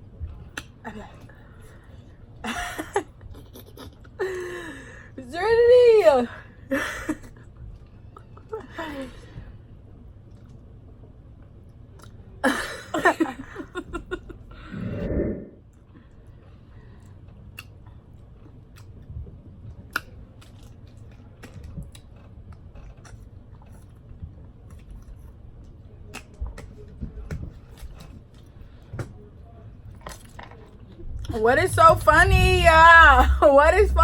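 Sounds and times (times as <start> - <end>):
chewing with mouth clicks: 17.3 - 28.5.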